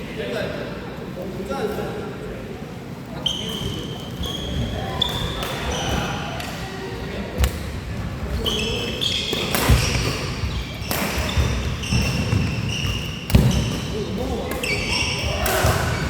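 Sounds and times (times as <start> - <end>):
shoes squeaking on court floor: 3.2 - 16.0
racket striking shuttlecock: 9.3 - 16.0.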